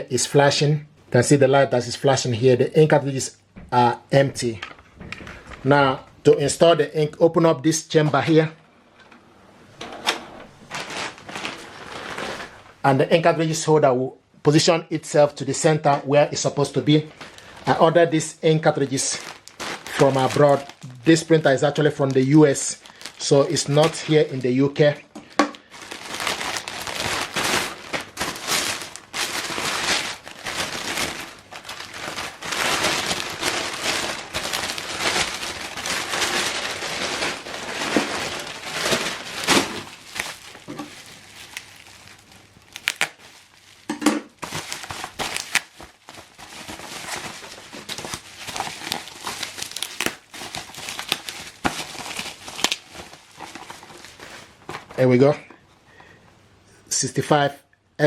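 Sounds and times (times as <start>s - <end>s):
plastic and paper crinkling: 10.6s - 12.8s, 16.8s - 55.6s
packaging tearing: 10.7s - 12.7s, 18.6s - 24.6s, 25.6s - 55.0s.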